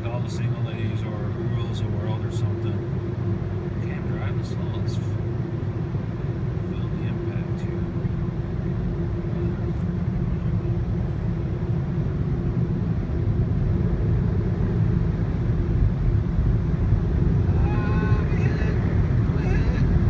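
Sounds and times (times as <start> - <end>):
car wash blowers rushing: 13.8 - 20.0.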